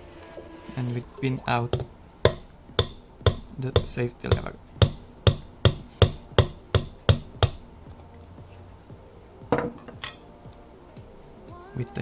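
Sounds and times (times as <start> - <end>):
hammer tapping metal punch: 1.7 - 7.6.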